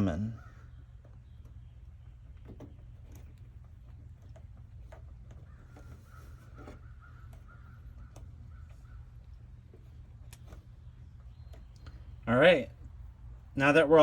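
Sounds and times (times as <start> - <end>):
bird calling: 0.0 - 3.4, 5.2 - 12.4.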